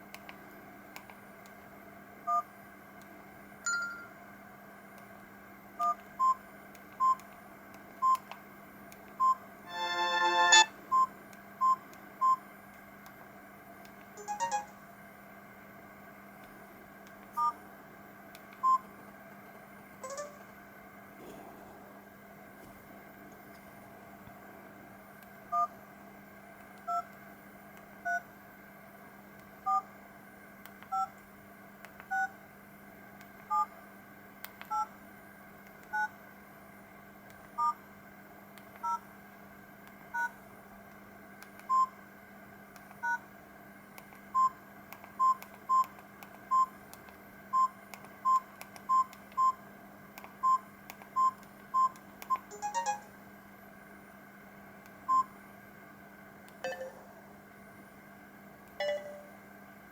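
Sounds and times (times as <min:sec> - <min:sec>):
two-note keypad beeps: 0:09.7 - 0:10.7, 0:52.5 - 0:53.2, 0:56.7 - 0:57.1, 0:58.8 - 0:59.4
single-pitch key beeps: 0:09.7 - 0:11.8, 0:52.5 - 0:53.2, 0:56.7 - 0:57.1, 0:58.8 - 0:59.4.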